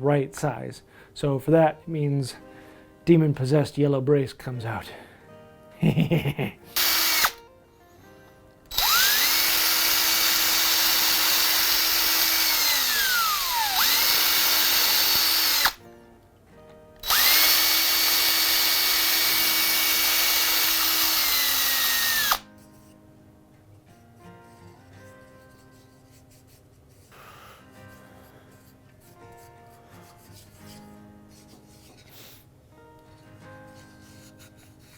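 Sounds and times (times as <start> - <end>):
power drill whining: 6.8 - 7.4, 8.7 - 15.8, 17.0 - 22.4.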